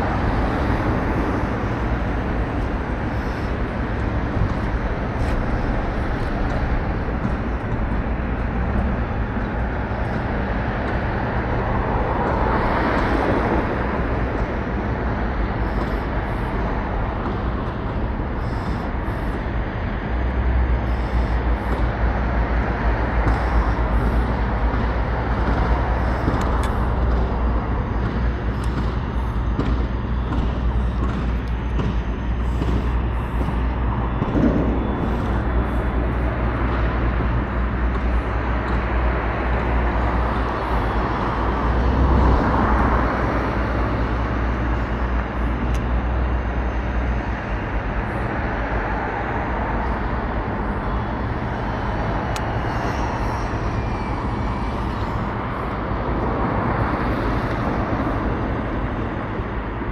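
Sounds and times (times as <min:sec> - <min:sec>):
road traffic noise: 0:00.0 - 0:59.9.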